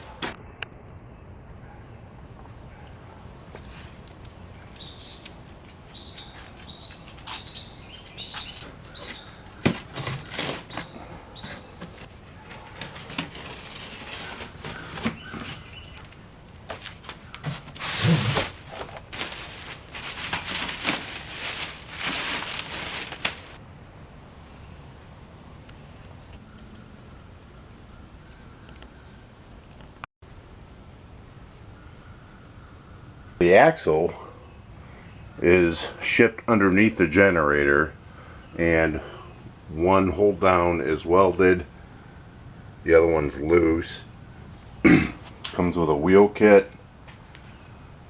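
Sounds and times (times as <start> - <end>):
cardboard rustling and scraping: 8.2 - 16.1, 16.7 - 23.6.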